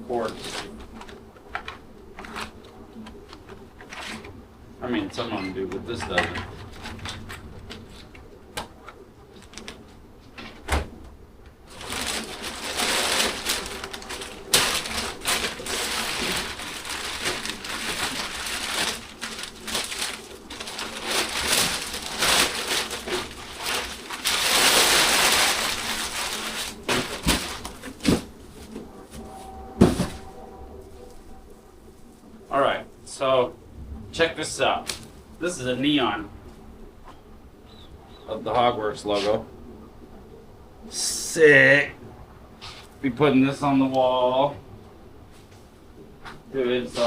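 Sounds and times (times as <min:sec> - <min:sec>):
plastic crinkling and rustling: 0:00.0 - 0:10.7, 0:11.6 - 0:32.3.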